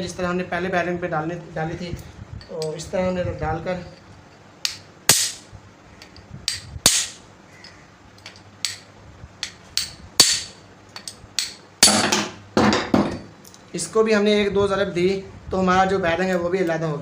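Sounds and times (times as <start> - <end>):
hammer striking a metal chisel: 6.5 - 7.2, 9.4 - 13.2.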